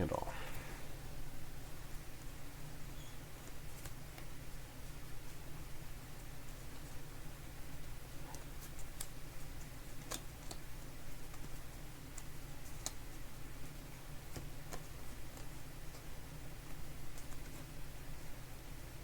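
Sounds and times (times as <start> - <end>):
steady low hum: 0.0 - 19.0
trading cards clicking: 7.8 - 9.2, 9.9 - 13.2.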